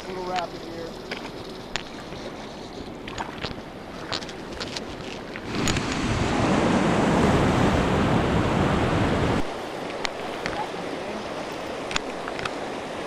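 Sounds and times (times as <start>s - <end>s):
light clicks: 0.3s - 1.9s
whitewater rushing: 5.3s - 13.0s.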